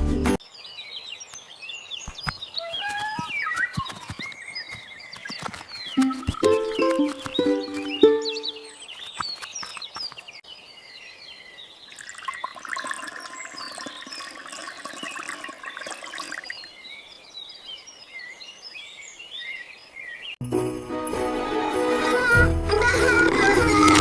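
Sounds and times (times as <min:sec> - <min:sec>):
birds chirping: 0:00.4 - 0:20.4
pouring or splashing water: 0:11.9 - 0:16.7.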